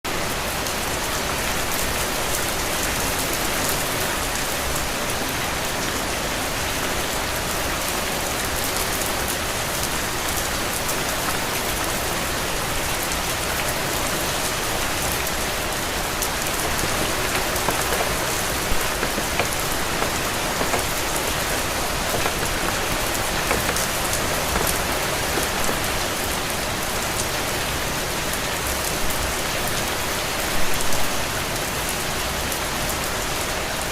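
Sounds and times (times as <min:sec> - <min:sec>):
steady rain hiss: 0:13.6 - 0:28.2
raindrops ticking: 0:16.5 - 0:26.2.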